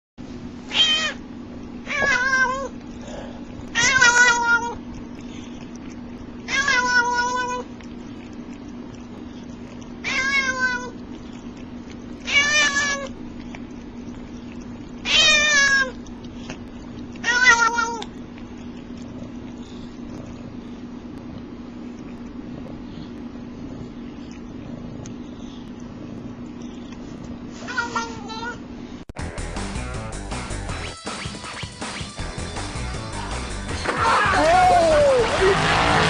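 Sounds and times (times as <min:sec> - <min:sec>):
cat meowing: 0:00.7 - 0:01.2, 0:01.9 - 0:02.8, 0:03.7 - 0:04.8, 0:06.5 - 0:07.7, 0:10.0 - 0:11.0, 0:12.2 - 0:13.1, 0:15.0 - 0:16.0, 0:17.2 - 0:18.1.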